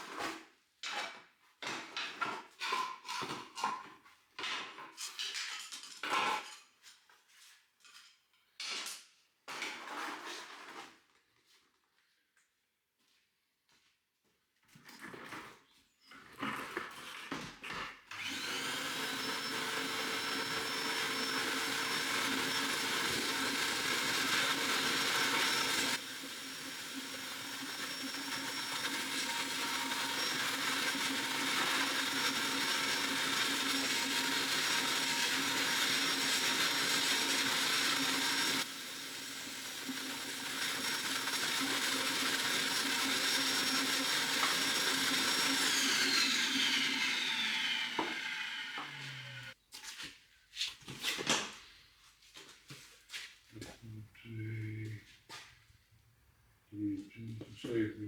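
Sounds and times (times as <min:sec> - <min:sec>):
small electric motor whining: 0:18.1 - 0:49.6.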